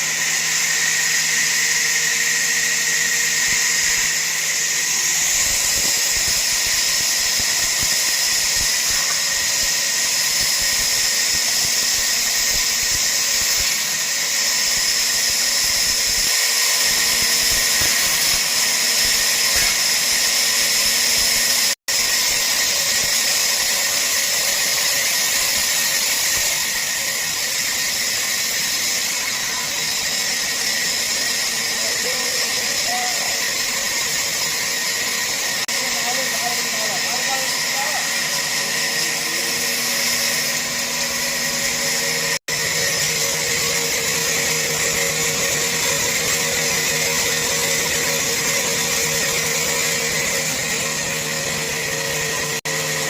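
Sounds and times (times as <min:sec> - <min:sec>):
power saw cutting wood: 0:00.0 - 0:53.0.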